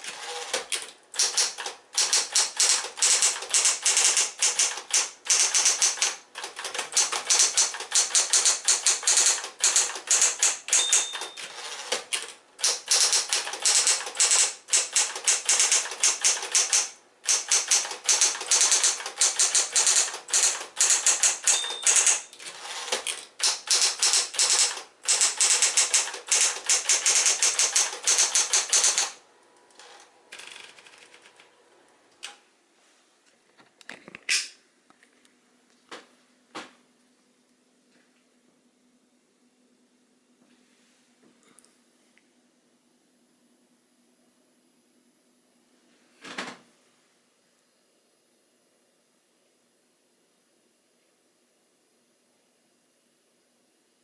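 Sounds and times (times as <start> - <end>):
electric typewriter typing: 0.0 - 29.2, 30.3 - 31.5.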